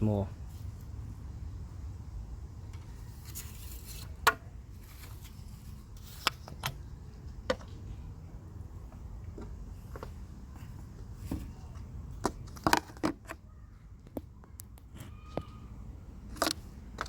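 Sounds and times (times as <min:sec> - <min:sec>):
clicks and knocks of car parts: 0:12.2 - 0:13.4.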